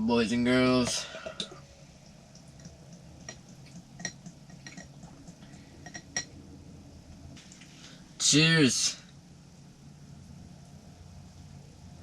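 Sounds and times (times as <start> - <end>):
spoon clinking against dish: 4.0 - 4.9, 5.8 - 6.3.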